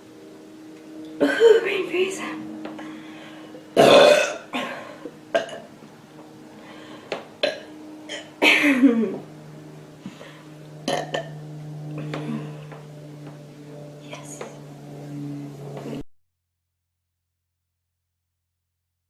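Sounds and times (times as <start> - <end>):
low hum: 0.0 - 16.1
girl burping: 3.8 - 5.7, 7.4 - 9.2, 10.9 - 11.3.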